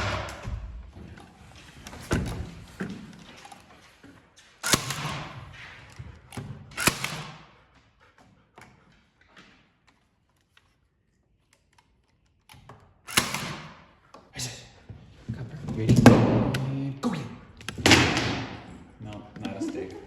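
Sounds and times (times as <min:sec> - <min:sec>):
loud sharp echoing knocks: 0:00.0 - 0:00.9, 0:17.8 - 0:18.7.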